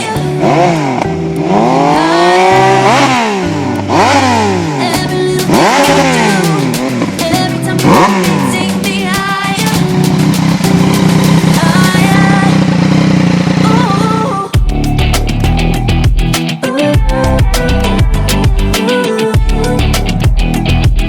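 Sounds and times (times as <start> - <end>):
motorcycle engine revving: 0.0 - 16.4
background music with bass line: 0.0 - 21.0.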